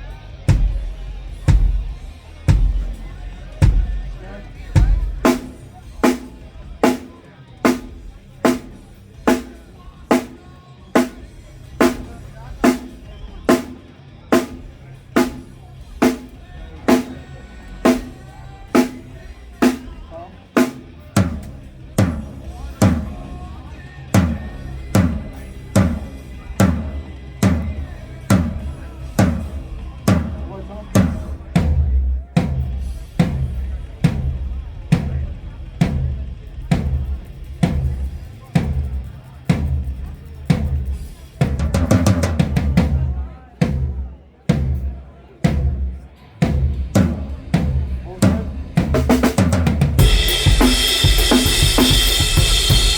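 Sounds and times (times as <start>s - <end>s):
drum hits ringing: 45.5s - 52.9s.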